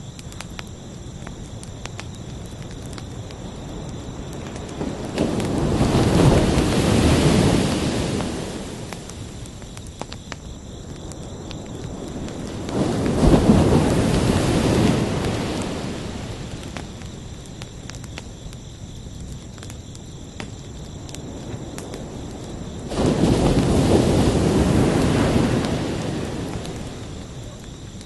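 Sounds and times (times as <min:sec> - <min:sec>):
crickets chirping: 0:00.0 - 0:28.0
ocean waves breaking: 0:04.8 - 0:09.2, 0:12.5 - 0:16.6, 0:22.9 - 0:27.5.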